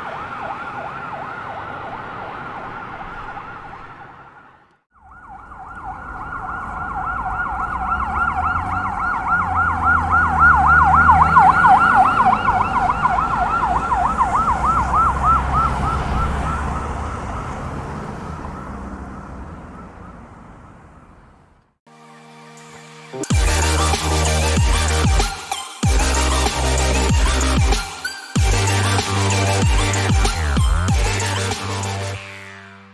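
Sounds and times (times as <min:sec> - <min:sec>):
police siren yelping: 0:00.0 - 0:21.3, 0:23.3 - 0:32.2
vehicle rumble: 0:00.0 - 0:21.8, 0:28.4 - 0:32.5.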